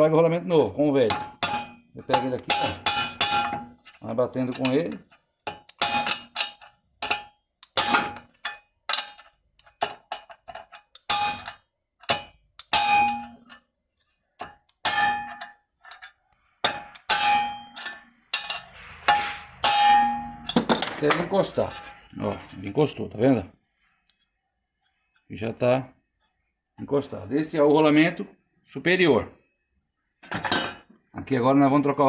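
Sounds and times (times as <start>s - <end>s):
metal-on-metal strikes: 16.6s - 22.4s.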